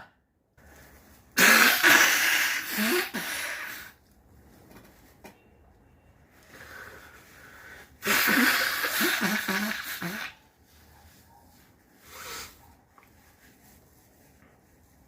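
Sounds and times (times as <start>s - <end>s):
person sneezing: 1.4s - 4.0s, 8.0s - 10.4s
soft sniff: 6.4s - 15.0s.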